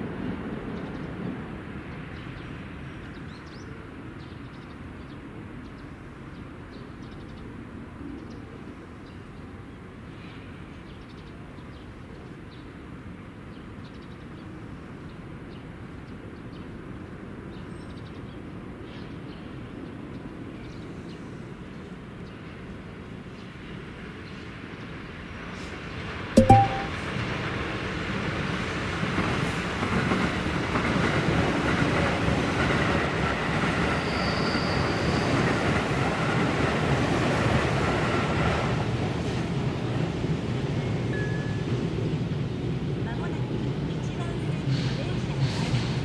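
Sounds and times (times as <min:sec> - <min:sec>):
distant rail and road traffic: 0:35.2 - 0:46.0.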